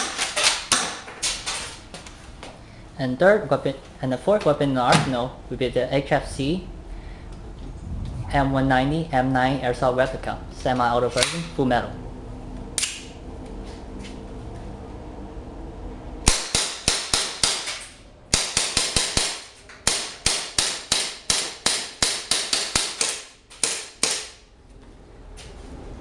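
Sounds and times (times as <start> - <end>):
airsoft pistol sharp cracks: 16.2 - 24.4.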